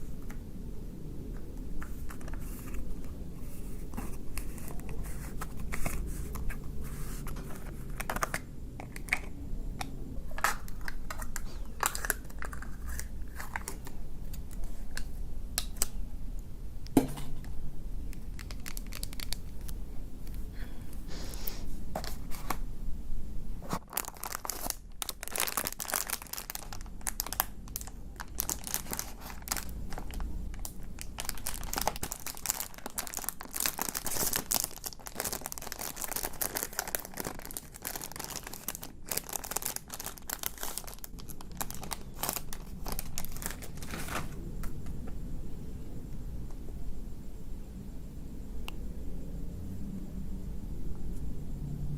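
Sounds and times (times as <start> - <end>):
plastic wrappers crinkling: 1.8 - 9.4, 10.3 - 16.0, 18.1 - 20.5, 23.6 - 44.4.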